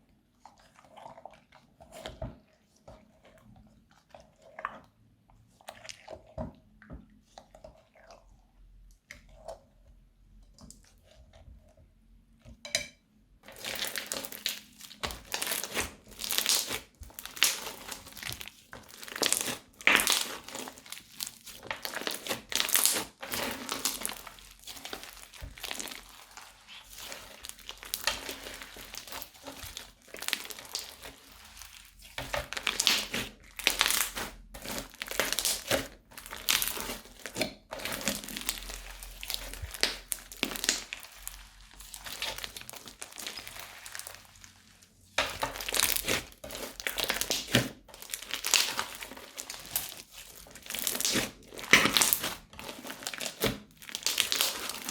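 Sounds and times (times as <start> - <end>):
crunchy slime squeezed in plastic bags: 13.4 - 54.9.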